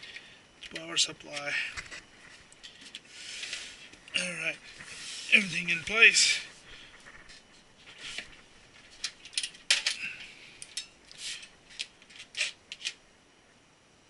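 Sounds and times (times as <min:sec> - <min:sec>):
gear handling clicks and rustles: 0:08.2 - 0:13.0.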